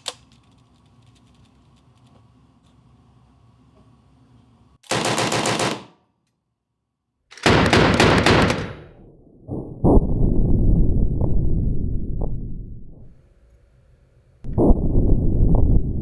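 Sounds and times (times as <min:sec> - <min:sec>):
machine gun bursts: 0:04.8 - 0:06.0, 0:07.3 - 0:08.9
low muffled sound: 0:09.0 - 0:13.4, 0:14.5 - 0:16.0.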